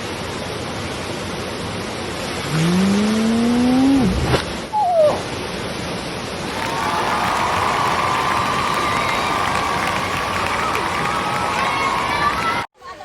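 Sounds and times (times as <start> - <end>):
waterfall rushing: 6.4 - 12.7.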